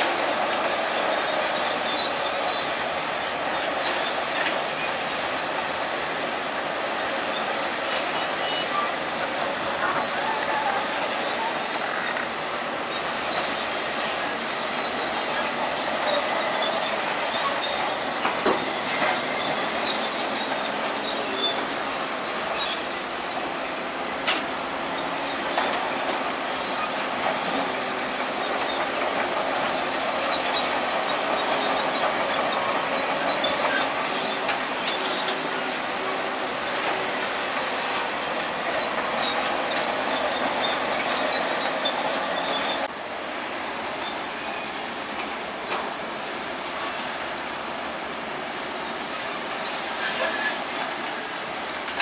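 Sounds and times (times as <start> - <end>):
bulldozer running: 0.0 - 52.0
steel tracks clanking and squealing: 0.0 - 52.0.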